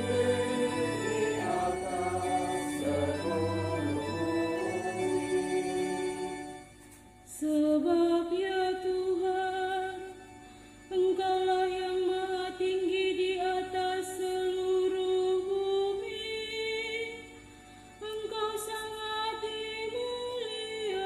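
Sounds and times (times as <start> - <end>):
church choir singing: 0.0 - 6.7.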